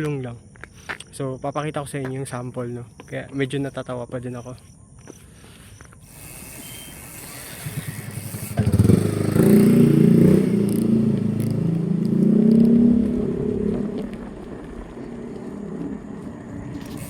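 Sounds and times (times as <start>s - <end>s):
vehicle engine passing by: 7.6s - 17.0s.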